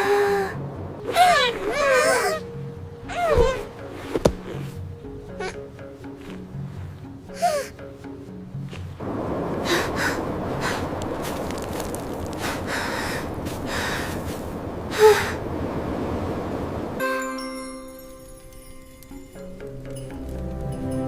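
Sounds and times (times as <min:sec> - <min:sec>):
steady rushing noise: 0:00.0 - 0:07.4, 0:08.0 - 0:17.0
music: 0:00.0 - 0:09.0, 0:17.0 - 0:21.0.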